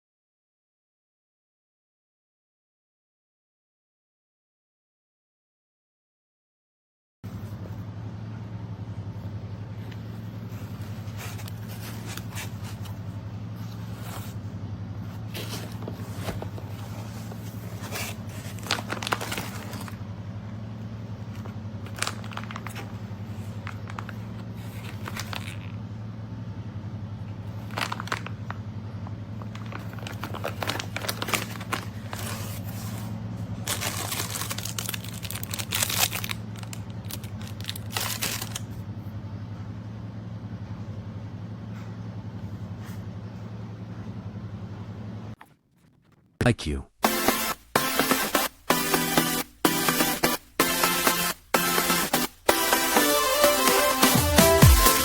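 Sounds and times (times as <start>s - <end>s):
packaging crinkling and scraping: 15.1s - 20.0s, 21.2s - 25.7s, 27.5s - 28.6s, 29.3s - 38.8s.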